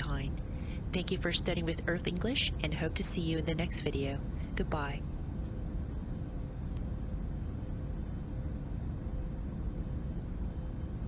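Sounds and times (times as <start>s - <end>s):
airliner cabin rumble: 0.0s - 11.0s
faint steady hum: 0.0s - 11.0s.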